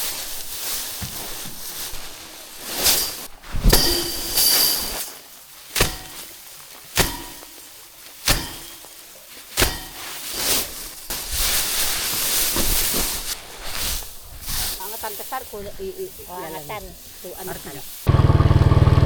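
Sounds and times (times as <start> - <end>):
rustling hiss: 0.0 - 18.1
sharp knocks: 5.8 - 6.3, 7.0 - 7.5, 8.3 - 8.8.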